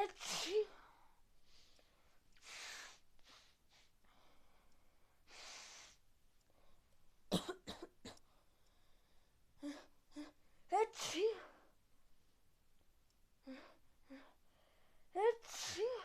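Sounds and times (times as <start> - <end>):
congested breathing through nose: 0.8 - 6.0.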